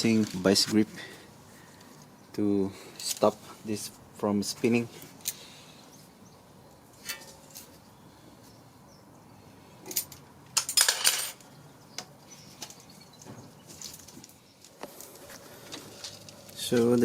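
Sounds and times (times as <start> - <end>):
clinks and rattles: 9.8 - 11.5.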